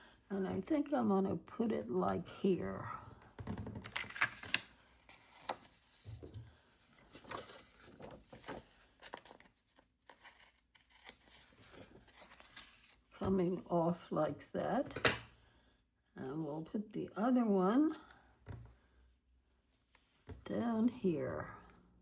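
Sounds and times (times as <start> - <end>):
paper rustling and crinkling: 3.4 - 13.0.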